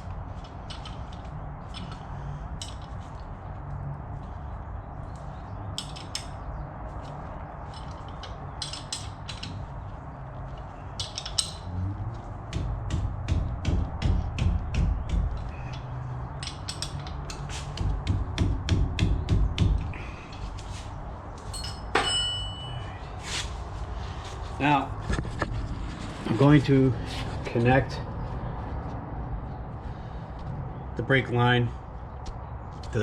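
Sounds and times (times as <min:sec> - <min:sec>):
heavy knocks: 0:12.4 - 0:15.5, 0:17.8 - 0:19.8.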